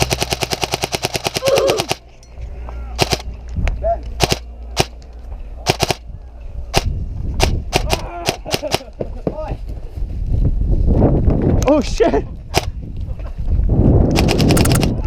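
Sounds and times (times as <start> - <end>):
airsoft gun automatic burst: 14.2 - 15.0.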